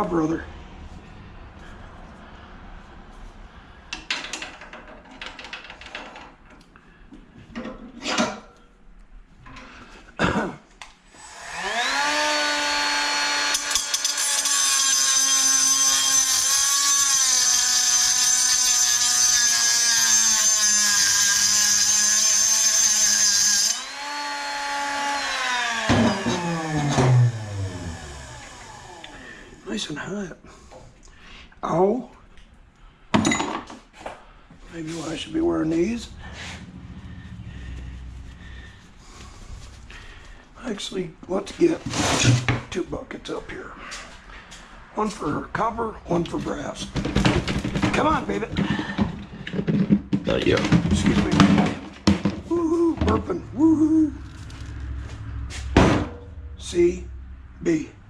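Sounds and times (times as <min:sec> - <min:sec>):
power tool cutting metal: 0:11.1 - 0:29.6
power tool motor whine: 0:11.2 - 0:14.5, 0:19.5 - 0:29.6.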